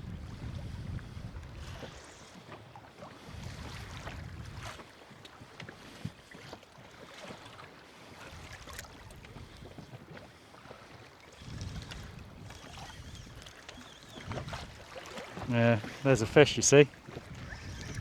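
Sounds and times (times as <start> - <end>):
low wind rumble: 0.0 - 1.7
wind on microphone: 0.0 - 2.2, 3.3 - 4.8, 11.4 - 13.5, 14.2 - 14.8, 15.4 - 18.0
water slapping against boat hull: 11.6 - 18.0.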